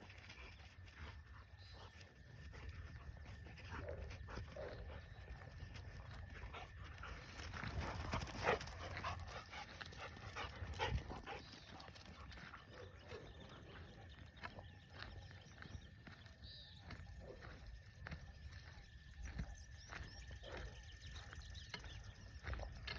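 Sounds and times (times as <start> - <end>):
dogs panting: 0.0 - 16.3.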